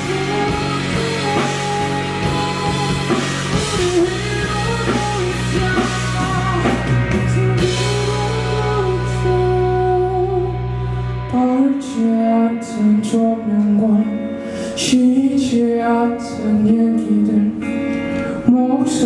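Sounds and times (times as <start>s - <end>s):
drums: 0.0s - 12.0s
bass guitar: 0.0s - 19.0s
electric guitar melody: 0.0s - 19.0s.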